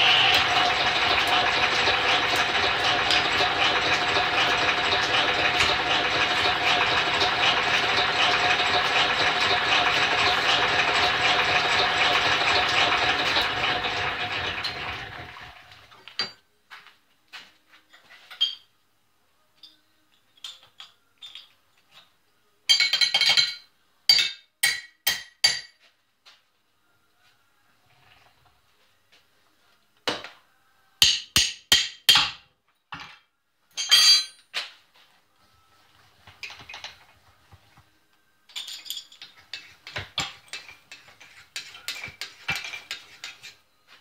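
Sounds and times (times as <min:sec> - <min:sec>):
drill press running: 0:00.0 - 0:16.0
metal clinks and knocks: 0:33.0 - 0:34.6, 0:38.5 - 0:40.9.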